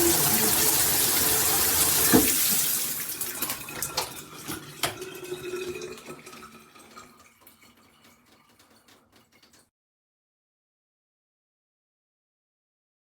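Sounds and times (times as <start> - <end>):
shower water running: 0.0 - 9.6
water dripping: 0.0 - 9.7
tap knock: 2.1 - 2.4.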